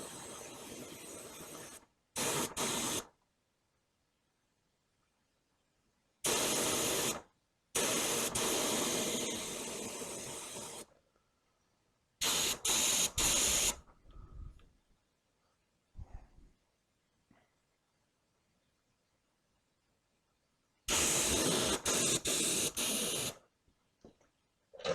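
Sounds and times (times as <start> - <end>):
spray gun hissing: 0.0 - 3.1, 6.3 - 7.2, 7.8 - 10.9, 12.2 - 13.8, 20.9 - 23.4.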